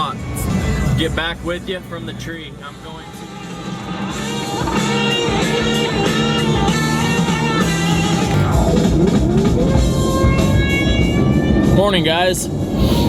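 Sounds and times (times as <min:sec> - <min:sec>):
electric guitar: 0:03.0 - 0:11.9
drum kit: 0:03.2 - 0:12.0.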